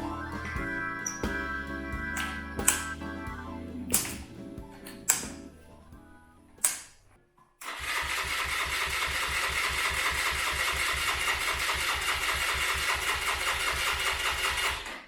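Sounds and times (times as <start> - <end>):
engine cranking on starter: 7.6 - 15.0.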